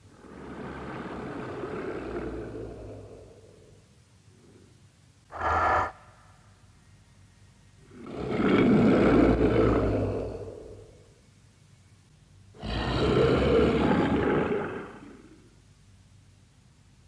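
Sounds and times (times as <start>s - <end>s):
monster roaring: 5.3s - 6.0s, 12.6s - 15.2s.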